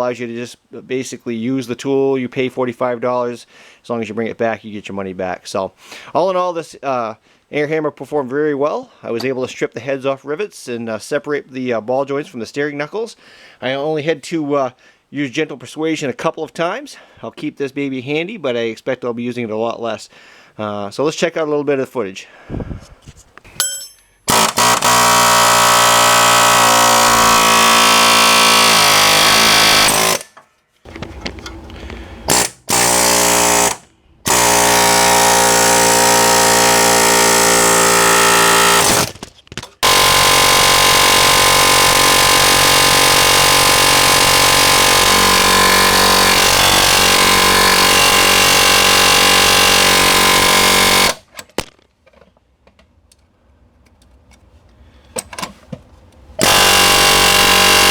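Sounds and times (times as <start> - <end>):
pneumatic air hammer buzzing: 23.5 - 51.5, 56.4 - 57.9.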